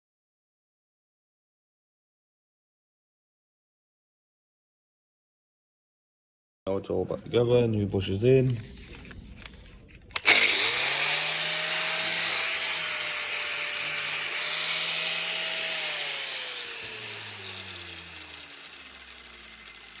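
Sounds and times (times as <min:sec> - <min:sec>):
angle grinder motor whine: 0:10.2 - 0:20.0.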